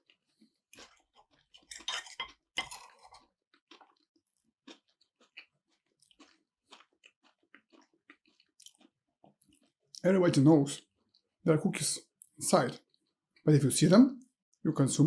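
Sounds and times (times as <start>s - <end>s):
person chewing food: 0.0s - 10.0s, 10.8s - 11.4s, 12.8s - 13.4s.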